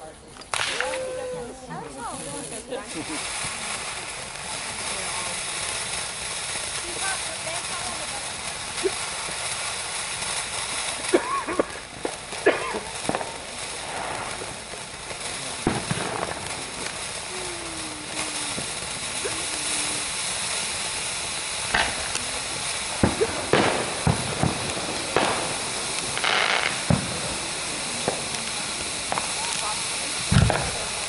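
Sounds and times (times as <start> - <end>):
fireworks bangs and cracks: 0.0 - 31.0
steady hiss: 0.0 - 31.0.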